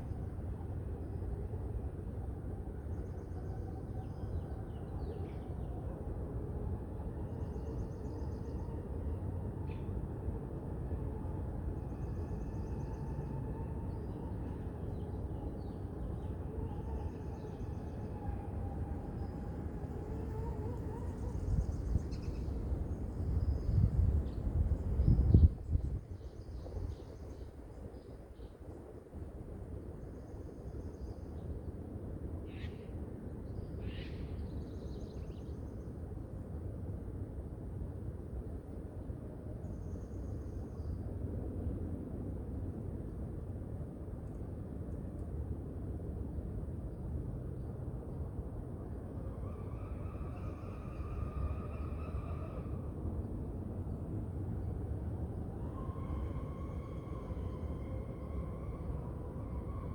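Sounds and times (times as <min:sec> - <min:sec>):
wind rumble: 0:13.3 - 0:30.1, 0:41.1 - 0:59.9
distant city traffic: 0:48.7 - 0:59.9.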